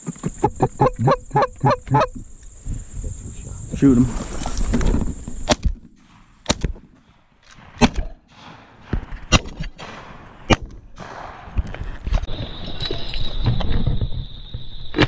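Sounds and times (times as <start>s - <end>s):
shotgun shots: 5.4s - 11.6s.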